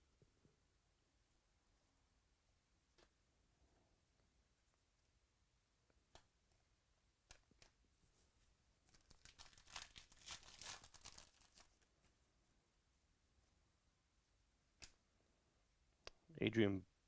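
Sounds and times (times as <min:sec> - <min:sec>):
foil wrapper crinkling: 0:08.9 - 0:11.9.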